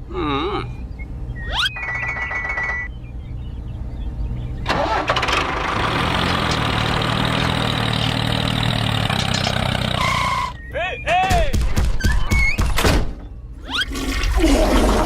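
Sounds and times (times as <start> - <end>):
engine starting and running: 4.6 - 10.5.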